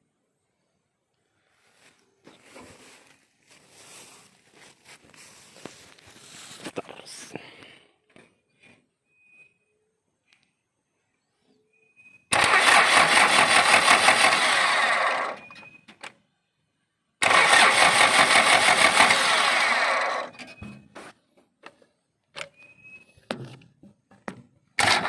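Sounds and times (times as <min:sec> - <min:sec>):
engine starter cranking: 0:12.3 - 0:16.2, 0:17.2 - 0:20.6, 0:24.8 - 0:25.0.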